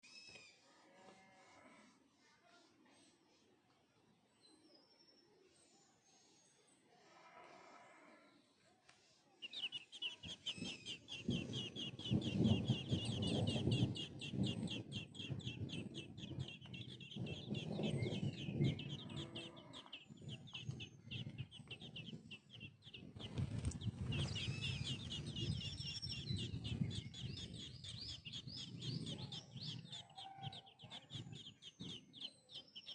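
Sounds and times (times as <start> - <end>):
nestlings chirping: 9.4 - 32.9
low rumbling noise: 9.5 - 32.2.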